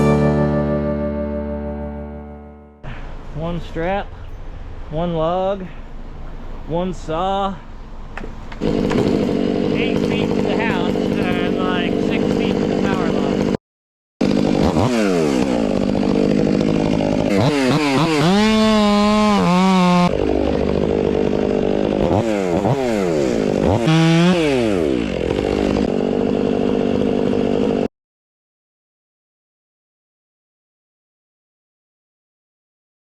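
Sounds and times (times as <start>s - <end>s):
chainsaw revving: 8.6s - 13.6s, 14.2s - 27.9s.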